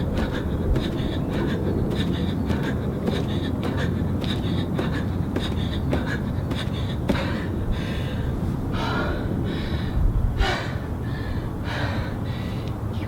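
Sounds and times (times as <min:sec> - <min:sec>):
low thuds of jumps: 0:00.0 - 0:07.8
woman breathing hard and gasping: 0:00.0 - 0:12.9.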